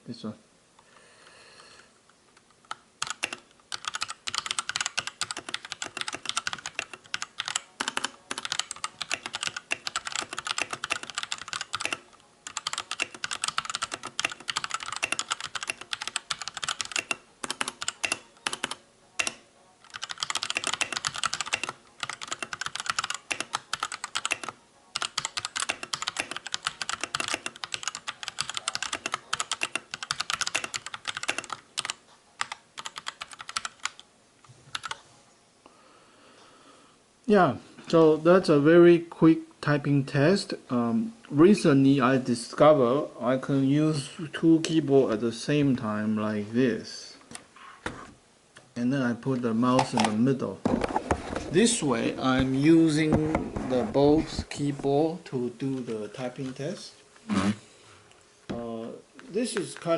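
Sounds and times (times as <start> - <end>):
mechanical keyboard typing: 2.7 - 34.0, 34.7 - 35.0.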